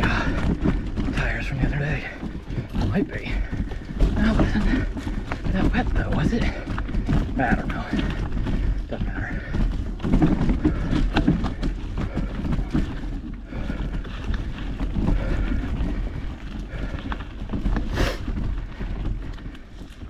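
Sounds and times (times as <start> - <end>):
bike rattling over rough trail: 0.0 - 20.0
rider breathing hard: 0.0 - 20.0.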